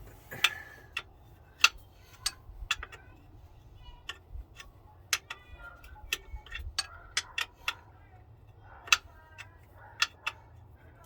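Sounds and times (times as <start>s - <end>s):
wrench clicking on bolt: 0.4s - 7.9s, 8.6s - 10.4s.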